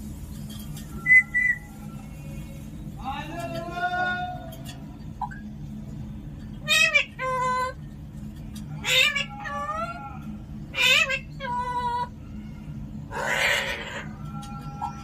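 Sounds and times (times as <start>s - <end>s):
parakeet meow-like calls: 6.6s - 7.8s, 8.7s - 15.0s
parakeet harsh screech: 13.1s - 14.2s.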